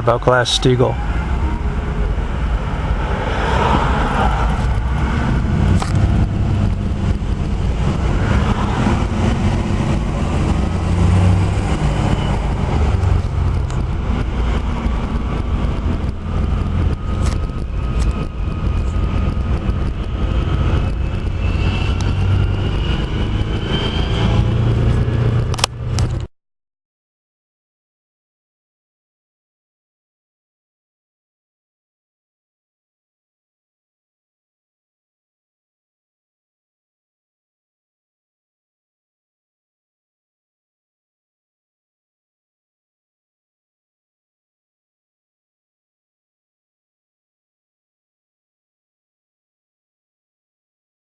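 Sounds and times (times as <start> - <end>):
car engine and road noise: 0.0 - 26.3.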